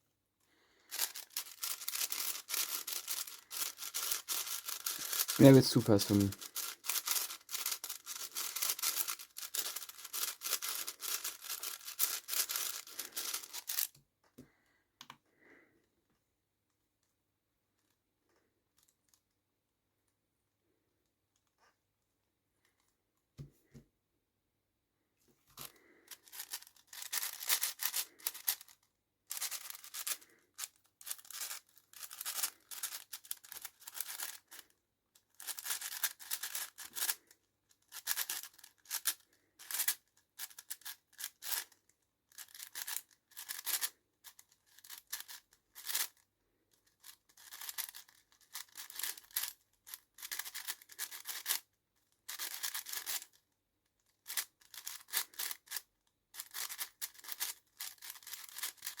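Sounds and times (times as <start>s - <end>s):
puzzle cube layers clicking: 0.9s - 13.9s, 26.2s - 28.7s, 31.0s - 34.6s, 35.4s - 37.2s, 47.0s - 51.6s, 52.3s - 53.3s, 56.4s - 59.0s.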